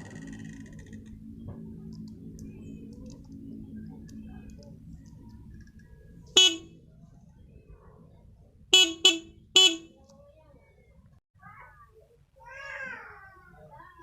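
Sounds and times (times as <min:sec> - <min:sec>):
faint low hum: 0:00.0 - 0:14.0
motorcycle horn beeps: 0:06.4 - 0:06.7, 0:08.8 - 0:10.0.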